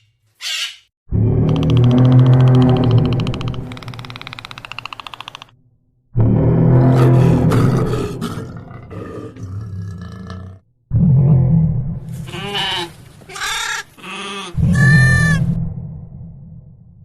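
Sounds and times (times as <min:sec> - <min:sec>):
low animal sound: 0:12.1 - 0:15.6.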